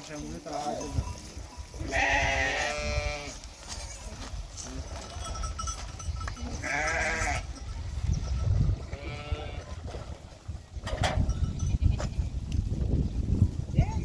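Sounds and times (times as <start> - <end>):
sheep bleating: 1.8 - 3.4, 6.5 - 7.5, 8.9 - 9.7.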